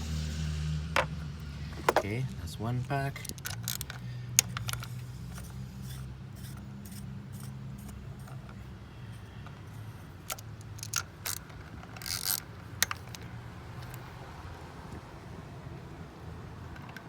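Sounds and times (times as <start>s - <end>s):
tool clicks and scrapes: 1.0s - 2.2s, 3.1s - 14.1s.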